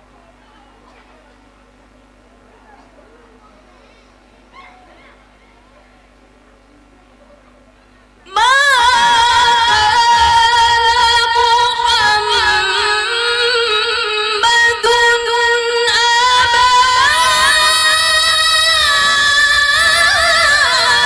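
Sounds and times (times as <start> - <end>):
woman reciting melodically: 8.0 - 21.0.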